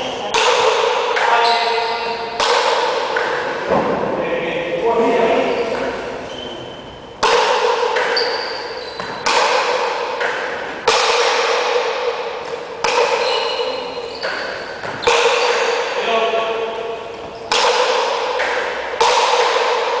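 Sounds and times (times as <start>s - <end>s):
paddles striking rubber ball: 0.0s - 4.2s, 7.2s - 20.0s
ball slamming off walls: 0.3s - 4.3s, 7.2s - 16.1s, 17.4s - 20.0s.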